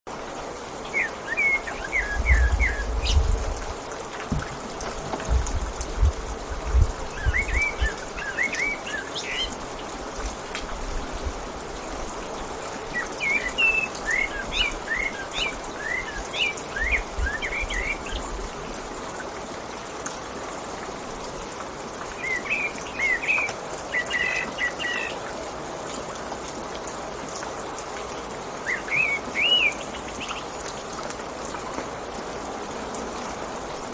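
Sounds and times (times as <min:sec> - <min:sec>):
rain patter: 0:00.1 - 0:33.9
songbirds chirping: 0:00.4 - 0:05.8, 0:07.0 - 0:10.0, 0:12.3 - 0:18.5, 0:28.5 - 0:30.9
dull low thumps: 0:02.2 - 0:03.7, 0:05.2 - 0:07.6.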